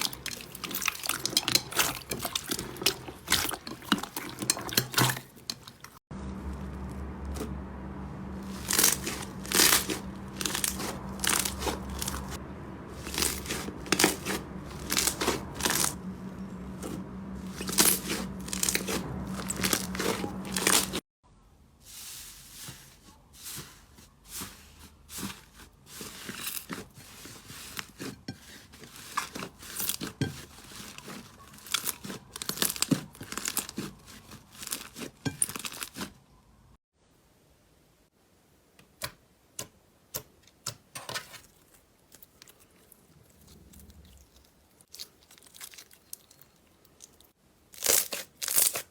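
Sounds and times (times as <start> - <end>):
steady low hum: 6.1 - 21.0
slime crackling and popping: 8.5 - 12.4, 44.4 - 48.9.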